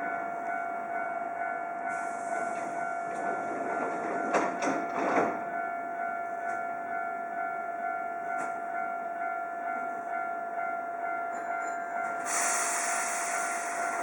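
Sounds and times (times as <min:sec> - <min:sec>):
level crossing alarm ringing: 0:00.0 - 0:14.0
train rumbling: 0:00.0 - 0:14.0
loud hiss of air: 0:12.2 - 0:14.0.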